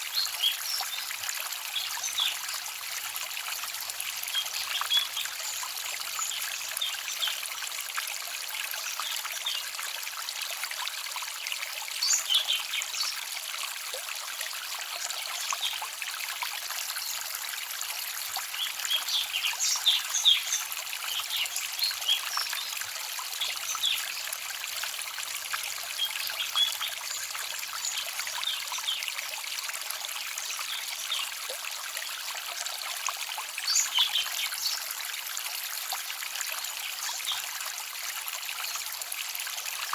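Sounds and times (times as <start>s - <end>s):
stream babbling: 0.0s - 39.9s
small birds chirping: 12.0s - 13.2s, 18.5s - 24.3s, 25.9s - 29.1s, 33.6s - 34.9s, 36.6s - 37.4s.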